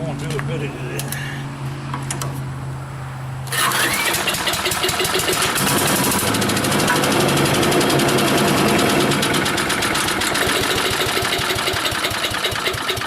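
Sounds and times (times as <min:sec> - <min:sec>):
small engine running unevenly: 0:03.5 - 0:13.0.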